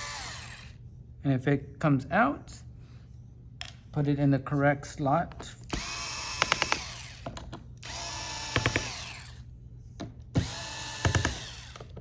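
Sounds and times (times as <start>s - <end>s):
electric screwdriver whine: 5.7s - 7.2s, 7.8s - 9.4s, 10.4s - 11.9s.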